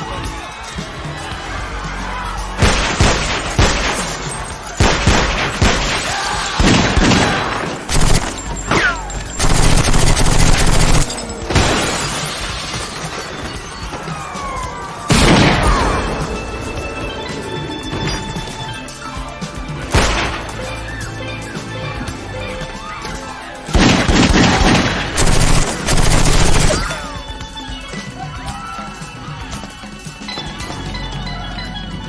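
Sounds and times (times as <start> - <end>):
background music: 0.0 - 32.0
gunshots: 2.6 - 16.4, 19.9 - 20.7, 23.7 - 27.1
glass shattering: 2.6 - 19.0.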